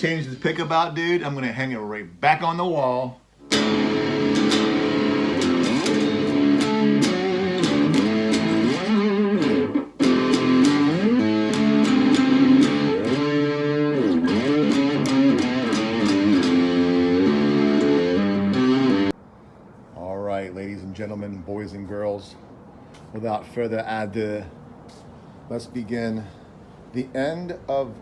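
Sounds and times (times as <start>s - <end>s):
electric slide guitar: 3.4s - 19.1s.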